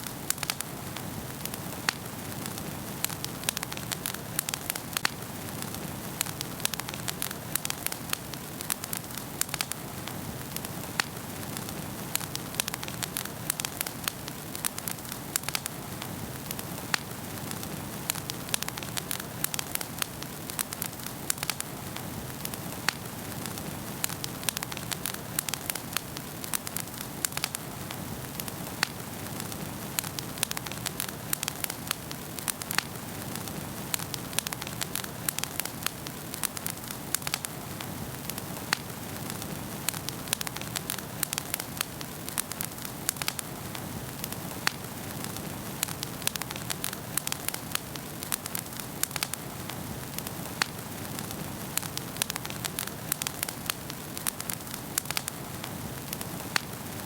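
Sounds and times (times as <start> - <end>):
wood fire crackling and popping: 0.0 - 57.0.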